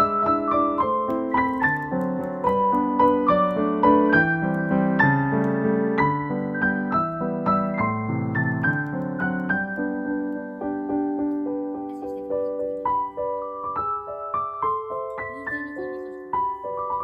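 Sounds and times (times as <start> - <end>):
slow gentle piano music: 0.0 - 17.0.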